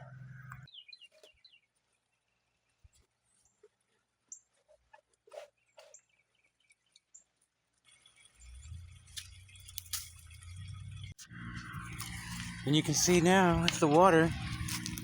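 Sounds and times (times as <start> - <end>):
low rumbling noise with hiss: 11.4 - 15.0.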